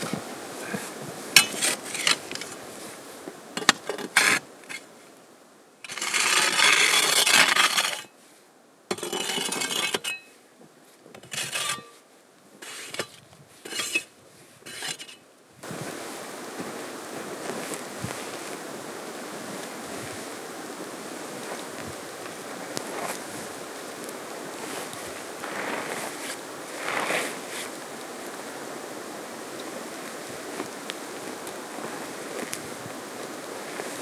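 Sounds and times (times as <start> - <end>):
wind noise: 0.0 - 4.4, 15.6 - 34.0
small objects clinking and scraping: 12.6 - 14.1.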